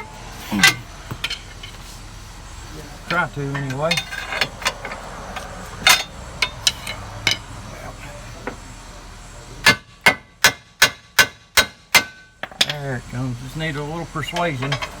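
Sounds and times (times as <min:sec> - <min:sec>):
metal clanks: 0:00.0 - 0:01.9, 0:03.0 - 0:07.6, 0:09.6 - 0:12.9, 0:14.2 - 0:15.0.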